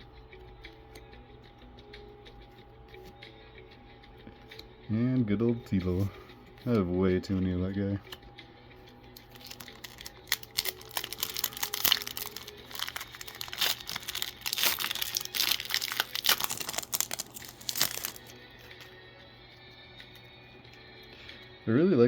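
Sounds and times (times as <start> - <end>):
faint background music: 0.0 - 22.0
foil wrapper crinkling and tearing: 9.2 - 18.9.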